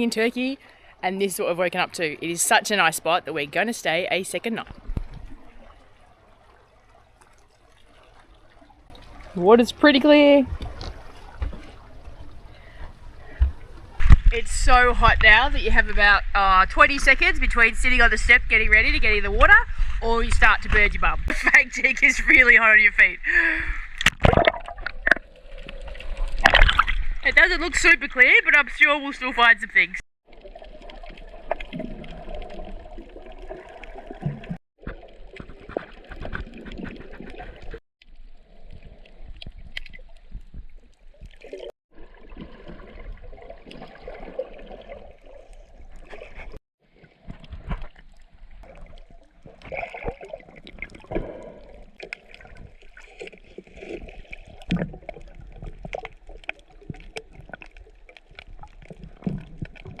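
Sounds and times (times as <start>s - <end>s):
water sloshing and gurgling: 1.8s - 14.2s, 23.9s - 27.3s, 30.3s - 60.0s
bubbly clicks: 8.9s - 14.0s.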